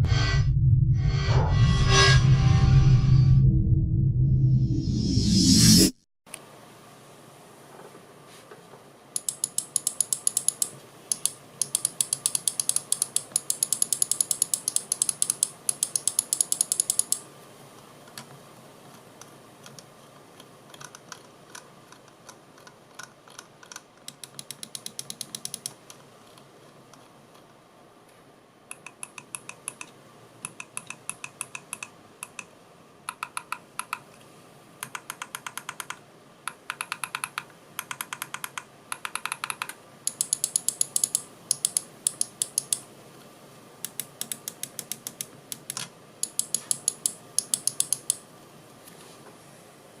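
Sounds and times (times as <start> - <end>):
mouse buttons clicking rapidly: 9.2 - 17.2, 20.7 - 25.8, 28.7 - 32.5, 33.1 - 34.0, 34.8 - 42.8, 43.8 - 48.2.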